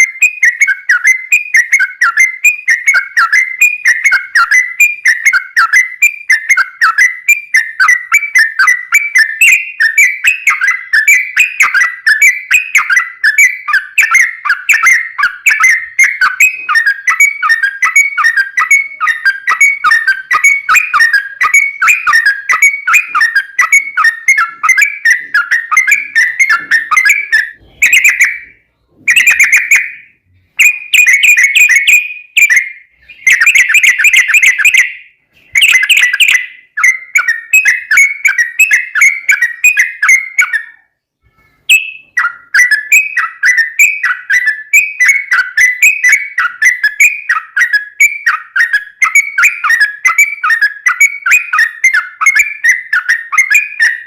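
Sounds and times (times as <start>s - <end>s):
bird singing bubbly song: 0.0s - 54.0s.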